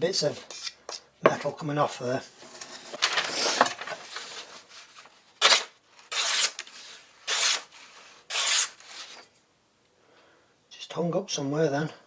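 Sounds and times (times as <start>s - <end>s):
knife blade rasping strokes: 5.4s - 6.6s, 7.3s - 7.7s, 8.3s - 9.2s.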